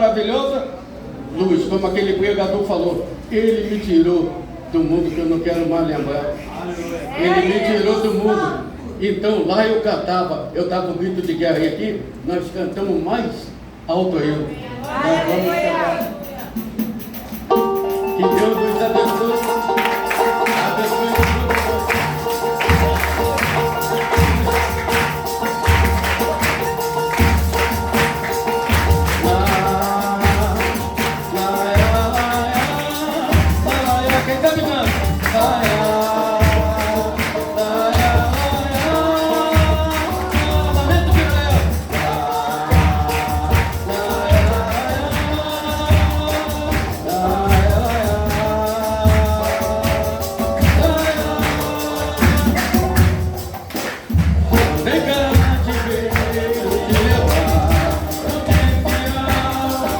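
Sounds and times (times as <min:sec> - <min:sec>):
instrumental accompaniment: 0:14.9 - 0:59.9
gospel group singing: 0:17.5 - 0:59.9
steady bass beat: 0:19.6 - 0:42.2.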